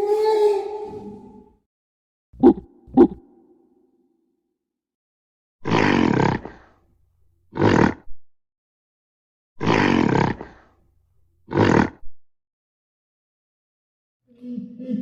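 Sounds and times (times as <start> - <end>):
gorilla roaring: 5.6 - 6.7, 7.5 - 8.1, 9.6 - 10.7, 11.5 - 12.0.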